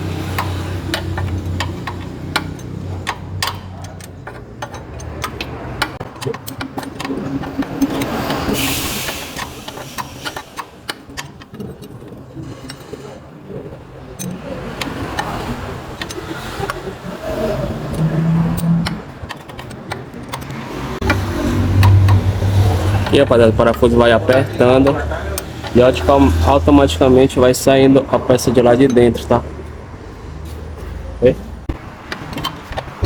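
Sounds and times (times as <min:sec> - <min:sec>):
wrench clicking and scraping metal: 0:00.0 - 0:27.4, 0:32.1 - 0:33.0.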